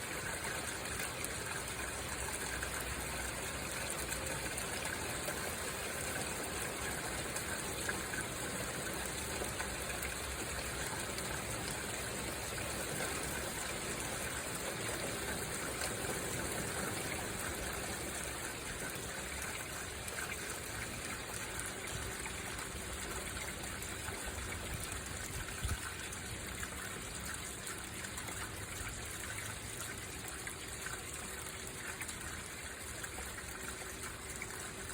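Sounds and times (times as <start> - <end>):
steady rain falling: 0.0 - 23.4
water trickling: 0.0 - 34.9.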